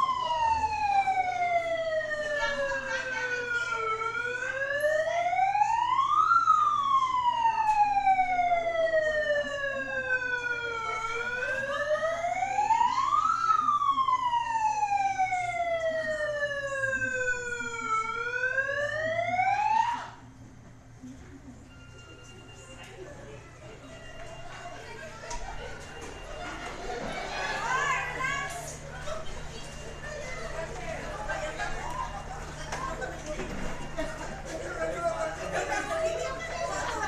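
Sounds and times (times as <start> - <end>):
wailing siren: 0.0 - 20.2.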